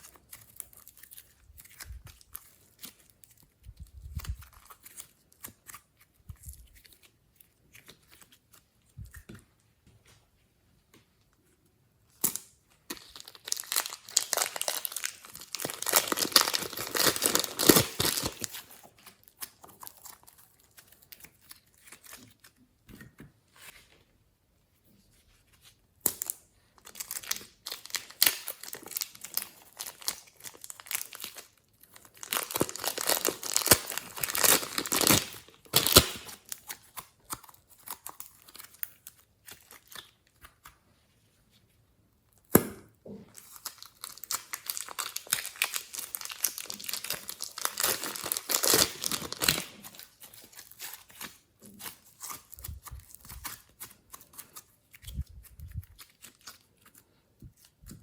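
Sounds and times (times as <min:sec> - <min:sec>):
slime crackling and popping: 0:12.2 - 0:21.5, 0:26.0 - 0:40.7, 0:43.4 - 0:56.7.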